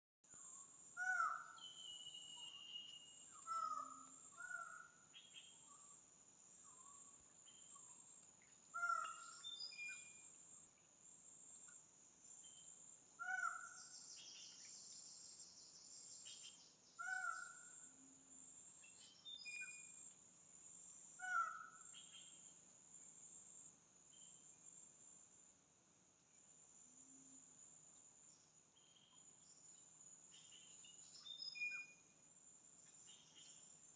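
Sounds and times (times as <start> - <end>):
high insect drone: 11.5 - 23.1, 26.2 - 33.9.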